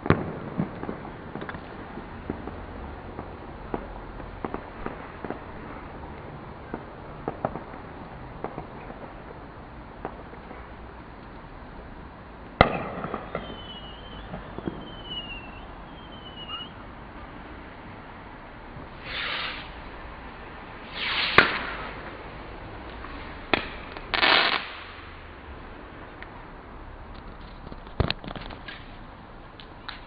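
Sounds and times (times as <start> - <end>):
firework bangs: 0.0 - 10.9, 11.9 - 16.7, 18.8 - 19.8, 20.8 - 25.6
crackling firework burst: 0.0 - 16.8, 18.8 - 25.7
hissing firework bursts: 0.0 - 16.8, 18.8 - 25.6
falling firework whistles: 12.6 - 16.8, 18.9 - 19.8, 20.8 - 22.0.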